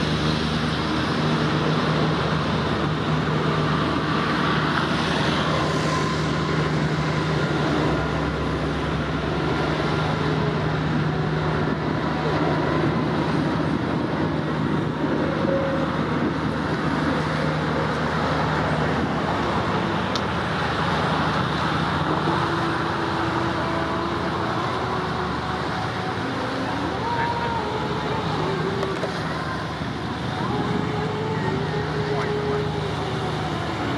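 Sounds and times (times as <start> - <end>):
road traffic rumble: 0.0 - 33.9.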